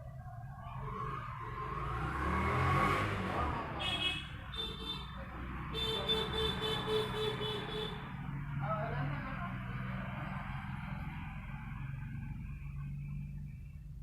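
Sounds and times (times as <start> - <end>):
motor vehicle passing: 0.3 - 4.5
car horn blasts: 3.8 - 8.0.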